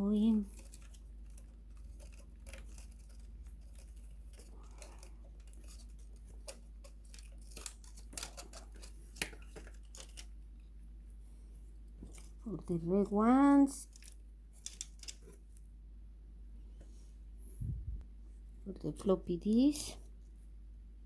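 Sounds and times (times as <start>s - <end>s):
steady low hum: 0.0s - 21.0s
clicks and rustles of plastic parts: 0.2s - 10.4s, 11.5s - 12.8s, 13.8s - 15.7s.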